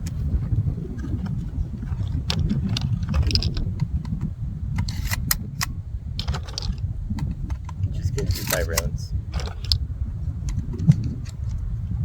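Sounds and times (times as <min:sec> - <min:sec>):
wind rumble on microphone: 0:00.0 - 0:12.0
shotgun metallic clicks: 0:02.2 - 0:09.8.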